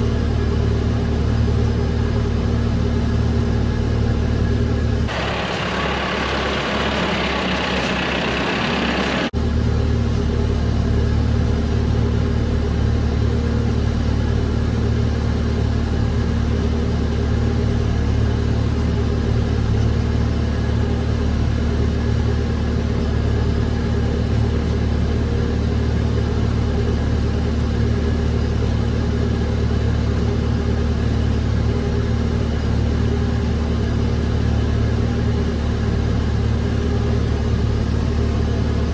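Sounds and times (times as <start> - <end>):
tractor engine running: 0.1 - 12.7, 20.6 - 38.9
rushing hiss: 5.1 - 9.3.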